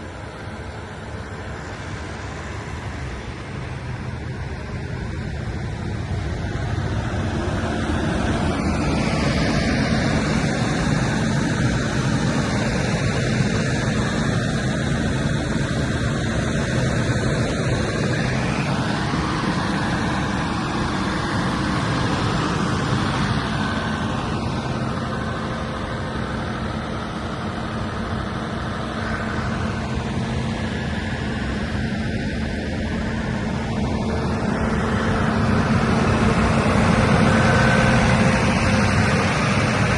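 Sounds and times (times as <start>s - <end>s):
diesel generator running: 0.0s - 39.9s.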